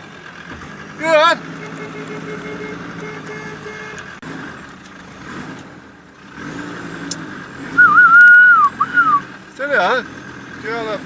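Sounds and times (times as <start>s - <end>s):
vehicle engine running: 0.0s - 11.0s
loud wavering human whistle: 7.8s - 9.3s.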